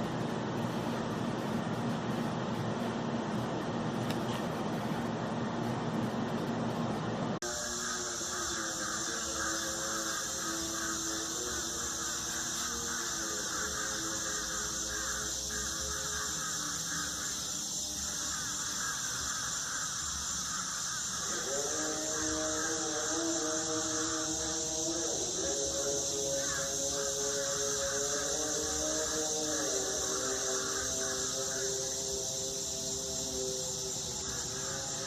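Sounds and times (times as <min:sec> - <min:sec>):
steady high hiss: 0:00.0 - 0:35.0
trumpet-like droning tone: 0:07.4 - 0:35.0.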